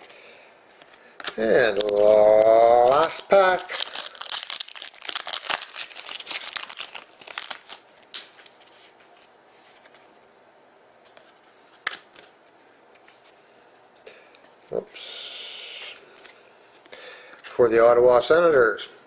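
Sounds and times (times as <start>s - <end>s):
card pack wrapper crinkling: 0.8s - 8.8s.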